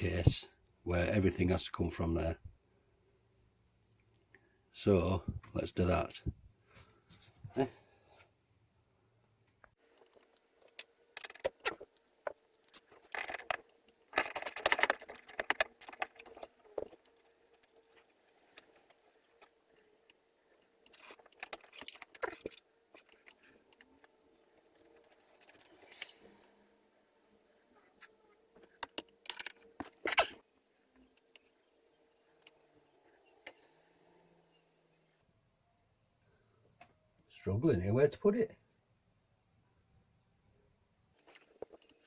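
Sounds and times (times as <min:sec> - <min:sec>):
tools and wire clinking and rattling: 0:09.8 - 0:26.4, 0:28.0 - 0:30.4.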